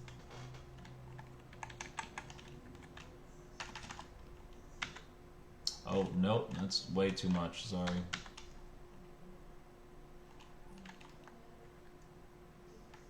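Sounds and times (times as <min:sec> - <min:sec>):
computer keyboard typing: 0:00.0 - 0:05.1, 0:05.7 - 0:08.6, 0:10.3 - 0:12.0
faint steady hum: 0:00.0 - 0:13.0.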